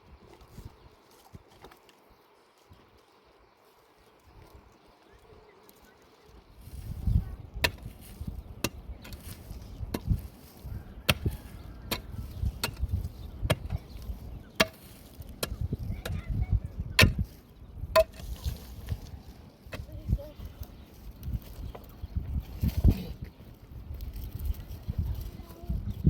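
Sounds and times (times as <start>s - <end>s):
tool striking wood: 14.6s - 16.2s, 17.9s - 18.2s.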